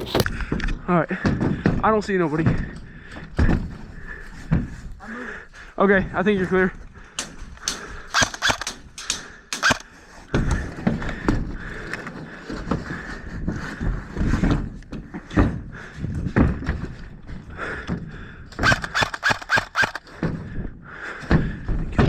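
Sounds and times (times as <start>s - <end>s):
sharp clicks: 0.0s - 0.3s, 7.6s - 9.9s, 18.6s - 20.1s.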